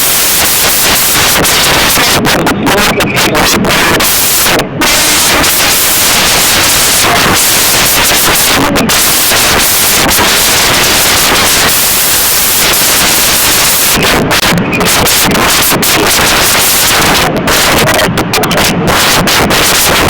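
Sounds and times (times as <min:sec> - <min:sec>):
harsh digital static crackling: 0:00.0 - 0:20.0.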